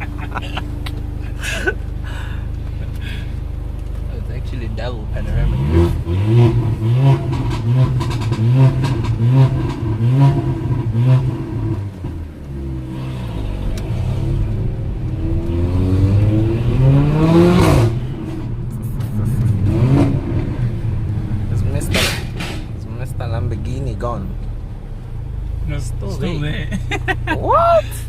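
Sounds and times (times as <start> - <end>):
exhaust pops and crackles: 0.0 - 5.4, 6.5 - 12.5, 17.8 - 24.6
car engine revving: 0.0 - 27.4.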